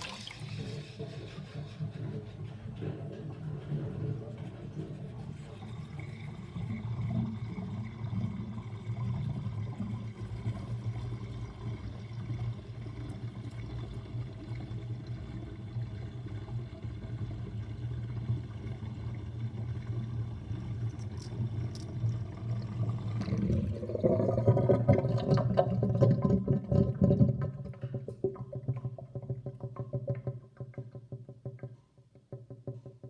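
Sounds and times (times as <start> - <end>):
sink drain gurgling: 0.0 - 2.9, 20.8 - 30.3.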